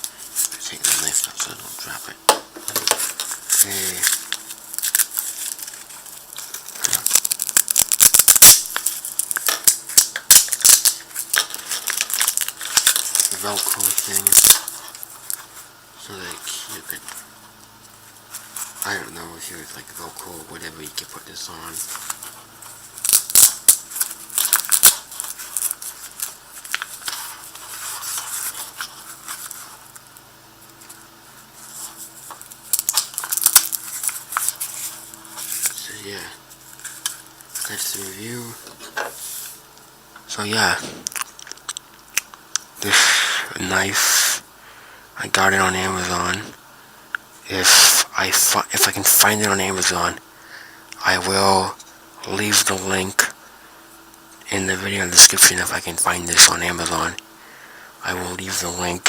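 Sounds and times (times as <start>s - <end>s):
velcro strap ripping: 3.5s - 15.1s.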